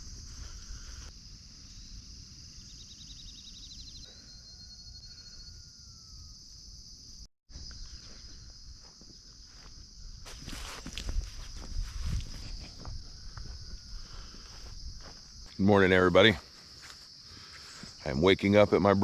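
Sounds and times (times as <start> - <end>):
crickets and insects chirping: 0.0 - 19.0
slow falling whistle: 4.0 - 6.6.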